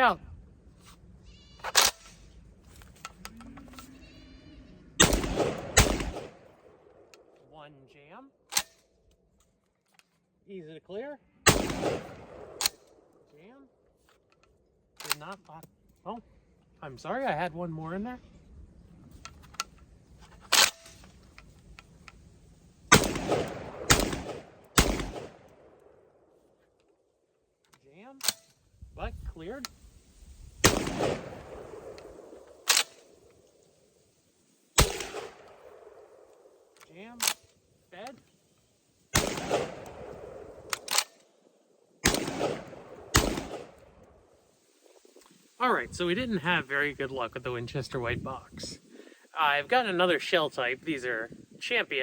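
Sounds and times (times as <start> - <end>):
shotgun shots with echo: 5.0 - 6.7, 11.5 - 12.7, 22.9 - 25.5, 30.6 - 32.9, 34.8 - 36.2, 39.2 - 41.0, 42.0 - 43.9
sharp clicks: 19.2 - 22.3, 30.6 - 33.6, 36.3 - 38.2, 39.2 - 41.3.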